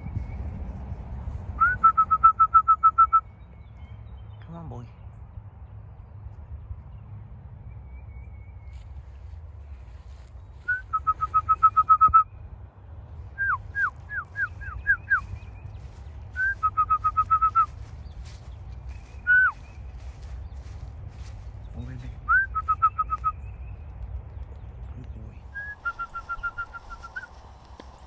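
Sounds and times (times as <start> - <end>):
person whistling: 1.6 - 3.2, 10.7 - 12.2, 16.4 - 17.7, 25.6 - 27.3.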